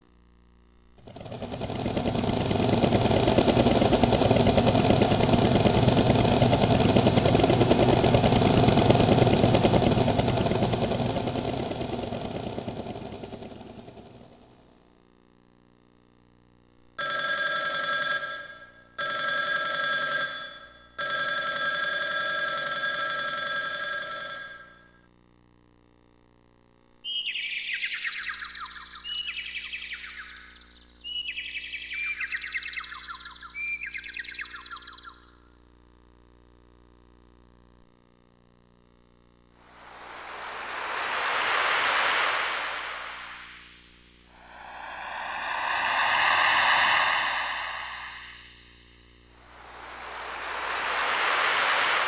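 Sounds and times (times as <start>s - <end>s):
synthesized motor drone with flutter: 1.0s - 14.6s, 39.7s - 52.0s.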